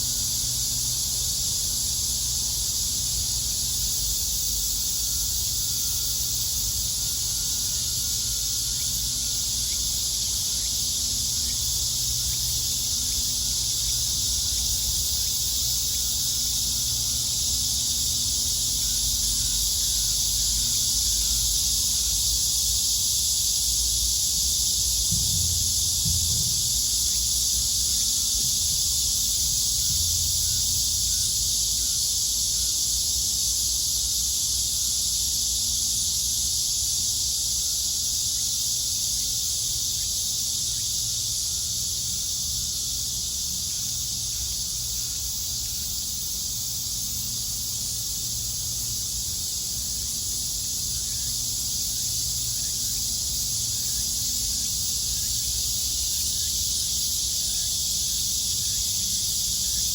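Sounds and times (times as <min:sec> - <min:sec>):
cicadas buzzing: 0:00.0 - 0:59.9
low rumble: 0:25.1 - 0:27.4.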